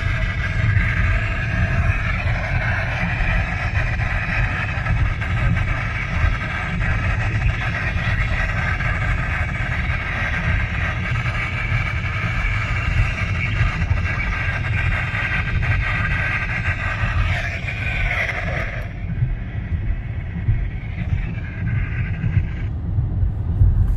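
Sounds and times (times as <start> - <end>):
vehicle rumble: 8.5 - 23.9.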